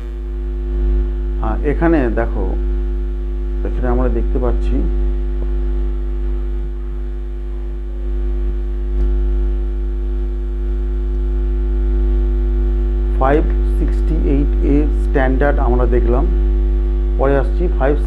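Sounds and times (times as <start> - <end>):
electrical mains hum: 0.0 - 18.0
man speaking: 1.4 - 2.6, 3.6 - 5.0, 13.1 - 16.4, 17.2 - 18.0.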